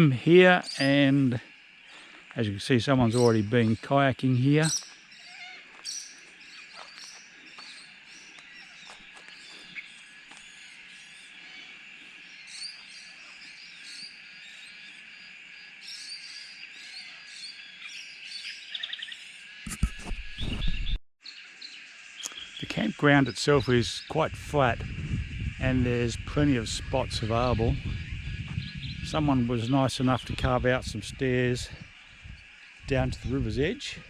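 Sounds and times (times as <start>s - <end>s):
bird chirps and calls: 0.0s - 15.1s, 15.7s - 19.8s, 22.2s - 34.0s
rustle: 0.0s - 18.9s
high-pitched insect chorus: 0.0s - 19.7s, 21.2s - 34.0s.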